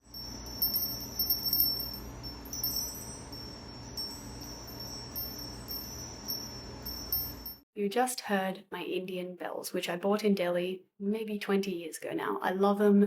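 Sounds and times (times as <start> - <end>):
bells jingling and ringing: 0.0 - 7.6.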